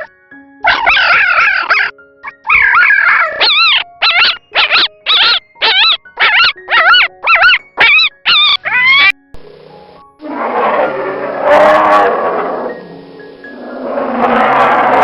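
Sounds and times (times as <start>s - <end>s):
dog whining yelps: 0.0s - 9.2s.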